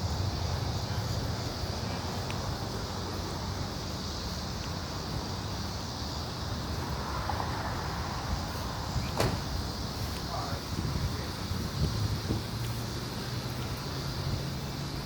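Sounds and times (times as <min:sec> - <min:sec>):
steady outdoor hiss: 0:00.0 - 0:15.0
wind rumbling on microphone: 0:06.5 - 0:15.0.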